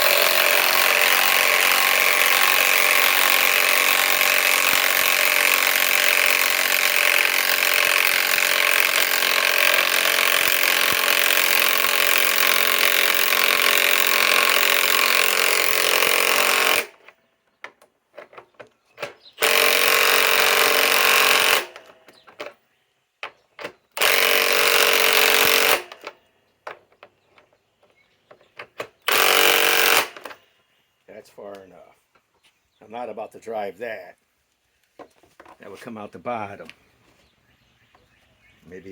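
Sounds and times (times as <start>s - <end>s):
impact wrench hammering: 0.0s - 17.0s, 19.4s - 21.9s, 24.0s - 26.2s, 29.0s - 30.3s.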